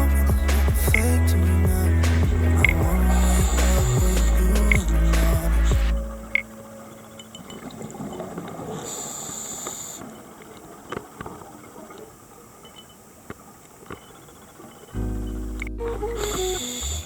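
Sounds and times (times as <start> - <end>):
loud music: 0.0 - 6.4
underwater hiss: 8.7 - 10.1, 16.2 - 17.0.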